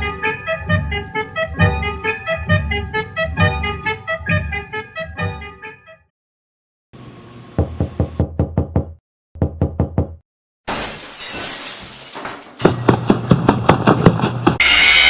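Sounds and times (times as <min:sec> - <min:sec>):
drum beat: 0:07.6 - 0:10.2, 0:12.6 - 0:14.6
loud shattering crash: 0:10.7 - 0:12.6.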